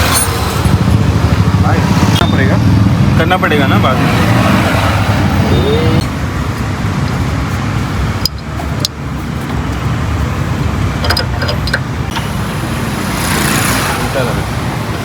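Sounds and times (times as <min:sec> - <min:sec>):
road traffic noise: 0:00.0 - 0:15.0.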